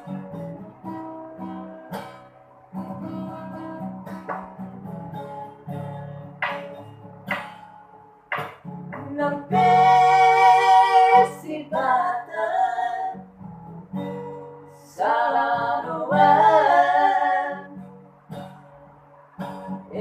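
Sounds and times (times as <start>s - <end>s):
strummed acoustic guitar: 0.0s - 20.0s
high singing voice with vibrato: 9.1s - 13.2s, 15.0s - 17.8s.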